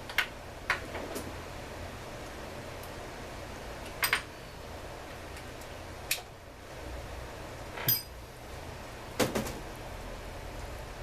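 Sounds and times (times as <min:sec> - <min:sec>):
metal tools clinking on workbench: 0:07.8 - 0:08.2.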